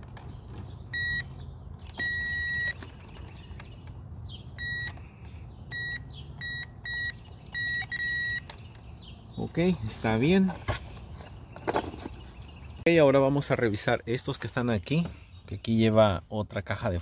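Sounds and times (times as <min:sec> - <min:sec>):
circuit tester beeping: 0:00.9 - 0:01.4, 0:02.0 - 0:02.8, 0:04.6 - 0:05.0, 0:05.7 - 0:08.6.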